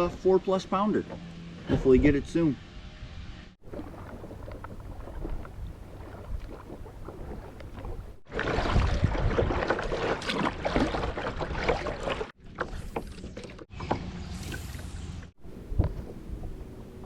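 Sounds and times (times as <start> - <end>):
water splashing around kayak: 3.6 - 13.7, 14.4 - 17.0.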